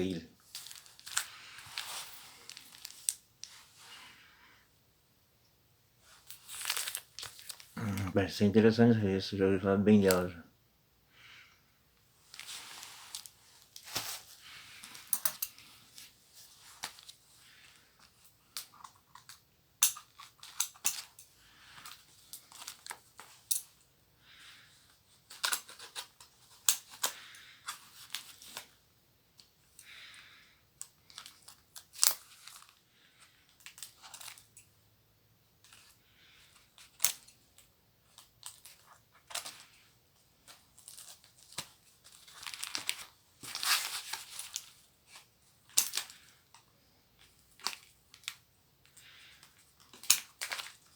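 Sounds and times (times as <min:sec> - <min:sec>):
paper packaging crinkling: 0:00.0 - 0:03.6, 0:06.2 - 0:08.1, 0:12.2 - 0:17.8, 0:38.1 - 0:46.5, 0:49.0 - 0:50.9.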